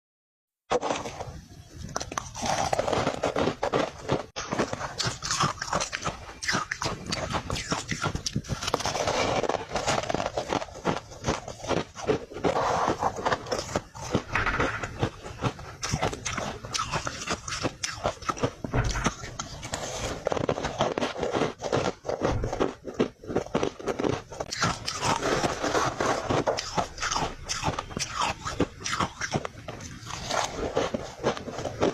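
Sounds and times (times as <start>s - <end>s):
frost being chewed crunching: 0.7s - 31.9s.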